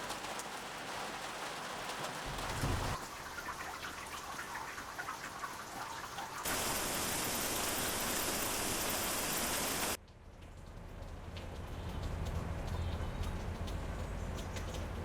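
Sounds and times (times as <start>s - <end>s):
heavy downpour hiss: 0.0s - 3.2s, 6.4s - 10.0s
raindrops pattering: 0.0s - 15.0s.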